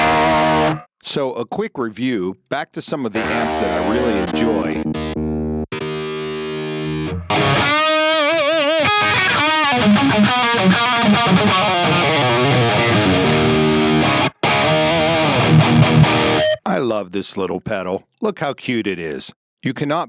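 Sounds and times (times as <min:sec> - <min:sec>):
distorted electric guitar: 0:00.0 - 0:00.9, 0:03.2 - 0:16.6.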